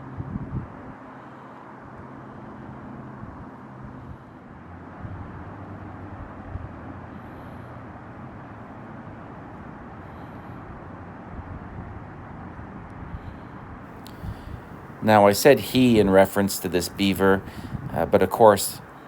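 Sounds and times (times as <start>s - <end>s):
distant city traffic hum: 14.0s - 19.0s.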